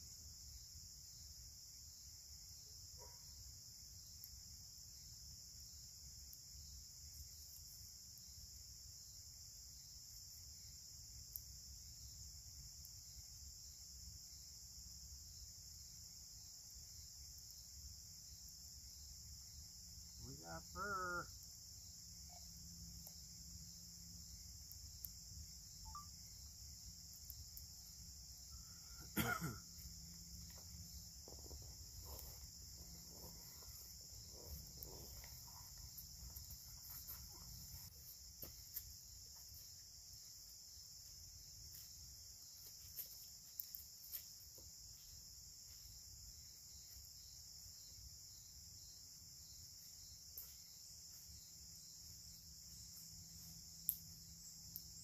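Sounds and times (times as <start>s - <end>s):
crickets chirring: 0.0s - 55.0s
campfire crackling: 3.7s - 44.4s.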